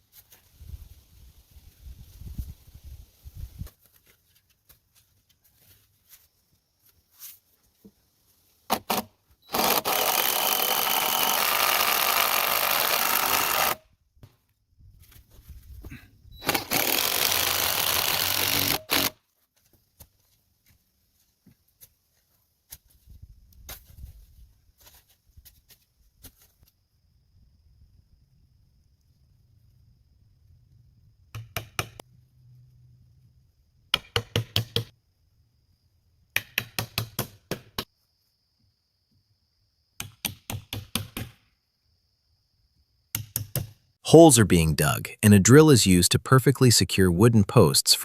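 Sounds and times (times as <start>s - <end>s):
power tool running: 9.5s - 13.8s, 16.4s - 19.1s.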